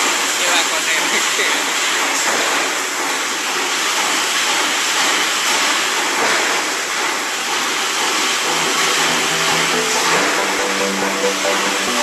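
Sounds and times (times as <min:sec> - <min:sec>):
press machine running: 0:06.9 - 0:12.0.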